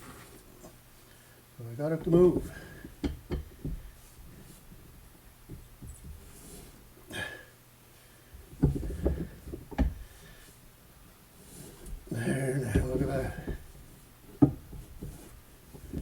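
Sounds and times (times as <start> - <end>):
faint steady hum: 0.0 - 16.0
dull metal knocks and clunks: 2.0 - 3.9, 8.6 - 10.0, 14.4 - 15.2.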